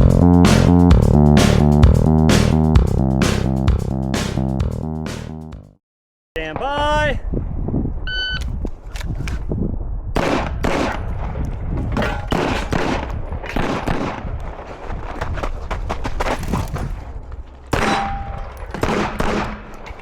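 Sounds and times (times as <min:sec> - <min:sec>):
gunshots in quick pairs: 0:10.2 - 0:11.2, 0:12.0 - 0:14.4, 0:17.7 - 0:20.0.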